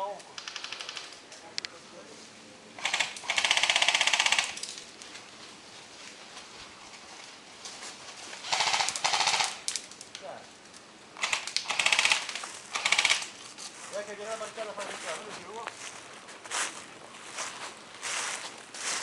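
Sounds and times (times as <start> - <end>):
airsoft gun firing bursts: 0.4 - 1.1, 2.8 - 4.6, 8.4 - 9.7, 11.2 - 13.3.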